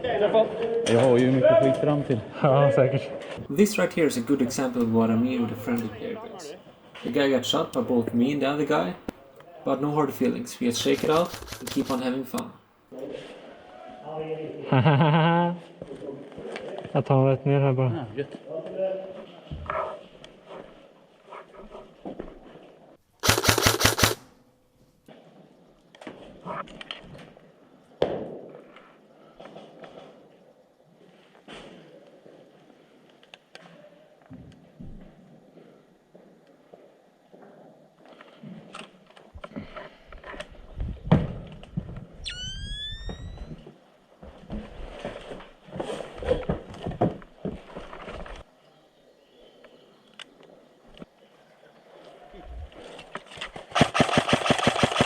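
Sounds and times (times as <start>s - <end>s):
airsoft rifle burst: 10.2s - 12.5s, 23.2s - 24.3s, 53.5s - 55.0s
footsteps on rough ground: 10.3s - 12.4s
faint clicks and rustles: 10.3s - 13.1s, 28.6s - 48.5s
gear knocking: 23.2s - 24.2s.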